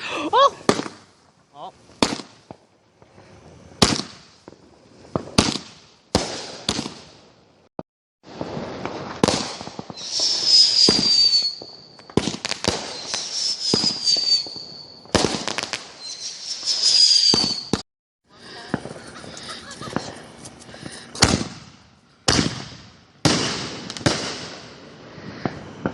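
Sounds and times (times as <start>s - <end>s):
fireworks bangs and crackling: 0.0s - 25.9s
falling firework whistles: 8.3s - 17.8s, 18.6s - 25.9s.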